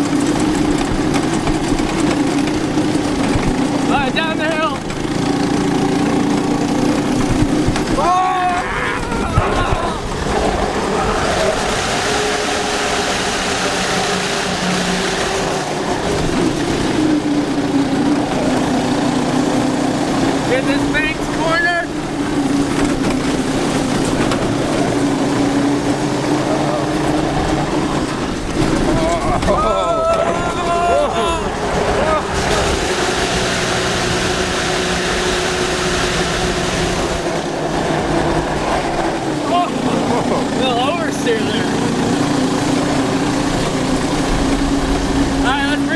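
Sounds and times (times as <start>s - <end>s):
small go-kart engine running: 0.0s - 45.9s
tyre noise: 0.0s - 45.9s
wind noise: 7.2s - 14.2s.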